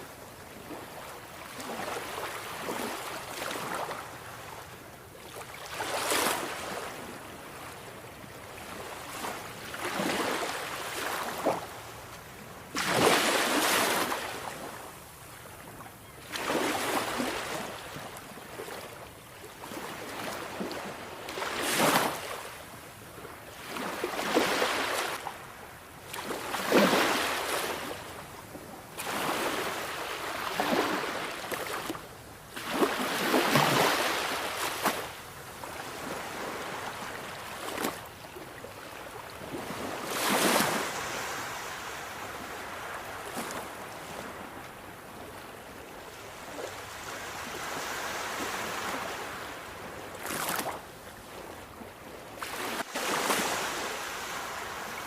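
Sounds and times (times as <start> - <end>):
sea waves breaking: 29.0 - 32.0, 32.6 - 35.2, 52.4 - 55.0.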